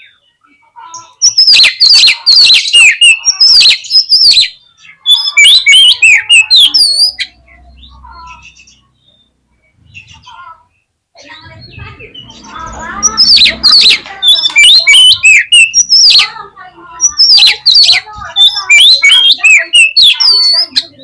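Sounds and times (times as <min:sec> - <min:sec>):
bird singing whistles: 0:05.1 - 0:07.3, 0:13.0 - 0:16.3, 0:17.0 - 0:20.8.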